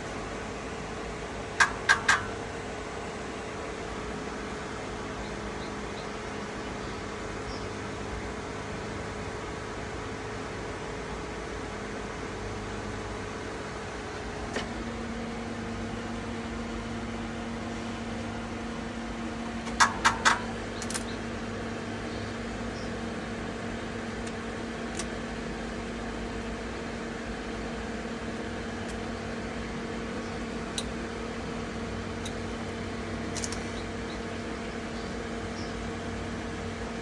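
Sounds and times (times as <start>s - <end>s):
steady mechanical hum: 0.0s - 37.0s
sharp clicks: 1.6s - 2.3s, 19.6s - 21.2s, 33.3s - 33.8s.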